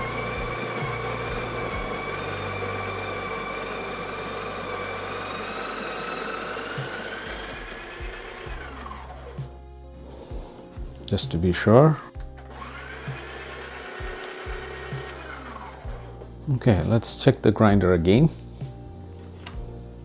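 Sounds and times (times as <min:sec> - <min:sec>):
coffee grinder grinding beans: 0:00.0 - 0:10.4, 0:12.4 - 0:16.1.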